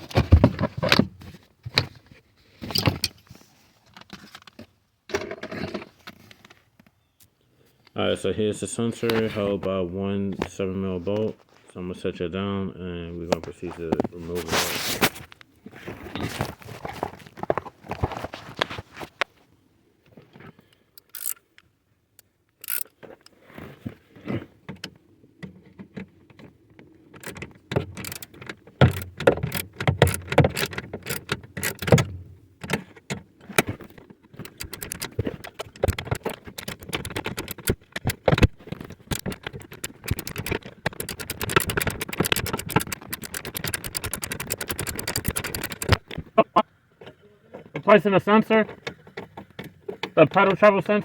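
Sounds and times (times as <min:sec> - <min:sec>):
ratchet wrench clicking: 0:21.0 - 0:21.4, 0:22.6 - 0:22.9, 0:28.0 - 0:32.0, 0:39.1 - 0:46.0
tools being handled: 0:21.0 - 0:21.5, 0:22.6 - 0:23.3, 0:27.2 - 0:32.8, 0:33.4 - 0:46.2.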